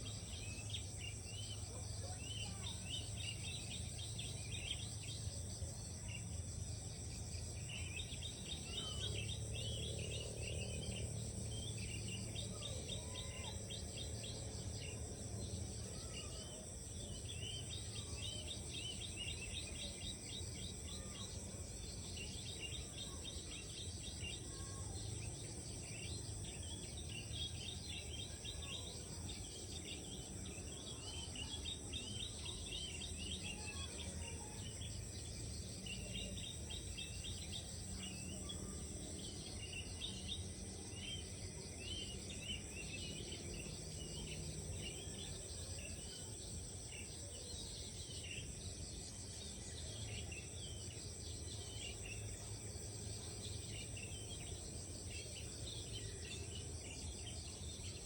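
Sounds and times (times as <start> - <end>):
birds singing repeated notes: 15.7 - 58.0.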